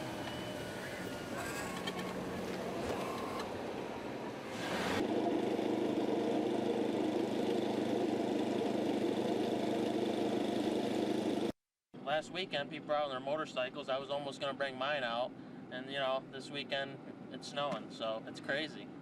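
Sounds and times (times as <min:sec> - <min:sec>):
vehicle engine idling: 0:00.0 - 0:11.5
outdoor noise: 0:00.0 - 0:19.0.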